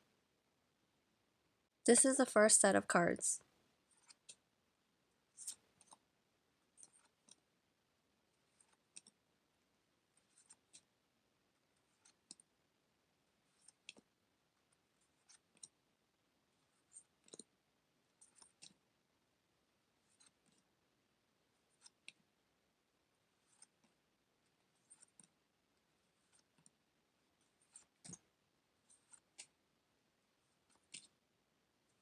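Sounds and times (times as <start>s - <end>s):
trading cards clicking and scraping: 3.9s - 4.4s, 5.4s - 6.0s, 6.8s - 7.4s, 8.5s - 9.2s, 10.2s - 10.9s, 11.8s - 12.4s, 13.5s - 14.0s, 15.0s - 15.7s, 20.0s - 20.7s, 23.4s - 24.0s, 24.7s - 25.3s, 26.2s - 26.7s, 27.5s - 28.2s, 28.9s - 29.6s, 30.6s - 31.2s.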